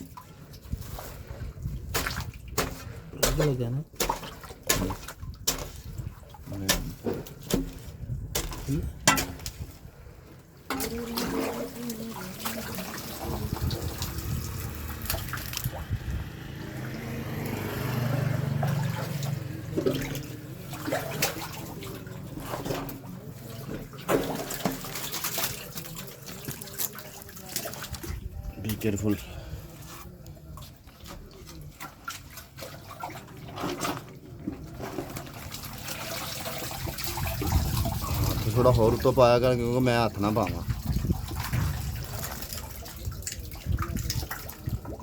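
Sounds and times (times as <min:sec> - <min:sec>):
water gurgling and splashing in drain: 0:00.0 - 0:45.0.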